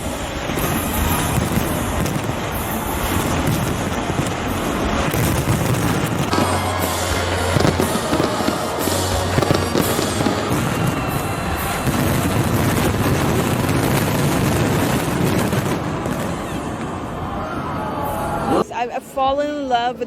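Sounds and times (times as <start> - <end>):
fireworks bursting and crackling: 0.0 - 17.4
music playing: 0.5 - 15.4.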